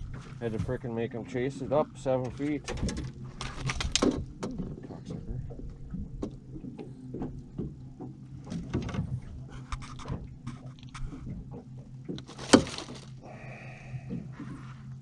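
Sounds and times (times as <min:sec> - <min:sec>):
knocks and clatter against boat: 0:00.0 - 0:13.3, 0:13.9 - 0:15.0
steady low hum: 0:00.0 - 0:15.0.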